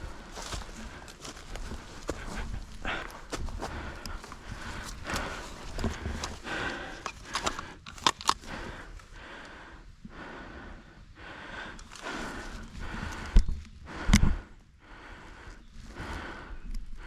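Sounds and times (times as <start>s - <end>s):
twigs snapping: 0.0s - 9.0s
footsteps through undergrowth: 0.0s - 9.1s.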